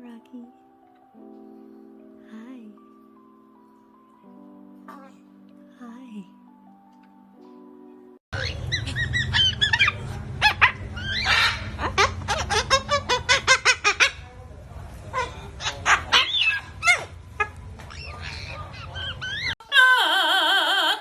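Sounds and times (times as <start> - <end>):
parrot squawking and whistling: 8.4 - 14.2, 15.6 - 21.0
low background hum: 8.4 - 20.9.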